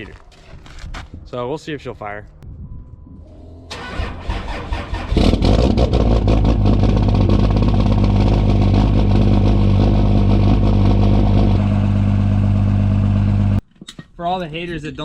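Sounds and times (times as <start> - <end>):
diesel engine starting and idling: 3.2 - 13.6.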